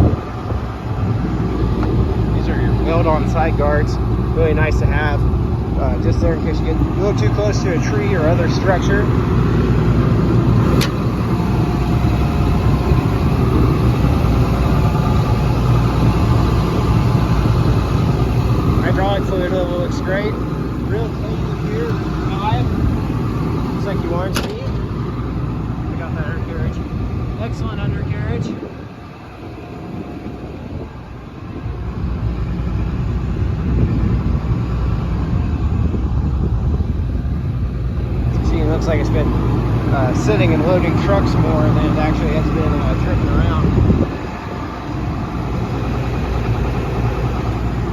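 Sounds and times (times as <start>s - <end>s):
excavator diesel engine idling: 0.0s - 47.9s
sharp click: 24.3s - 24.8s.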